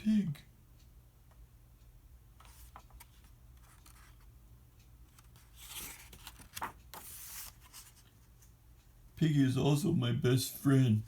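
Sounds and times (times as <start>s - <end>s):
faint steady hum: 0.0s - 11.0s
paper page rustling: 2.4s - 4.3s, 5.1s - 8.5s.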